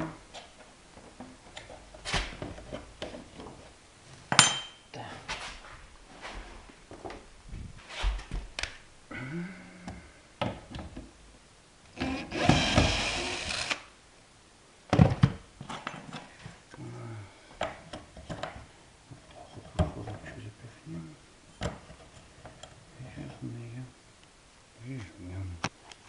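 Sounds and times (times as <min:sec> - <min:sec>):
cordless drill driving screw: 0:12.0 - 0:13.9
knocks and clatter of plywood: 0:14.9 - 0:16.0.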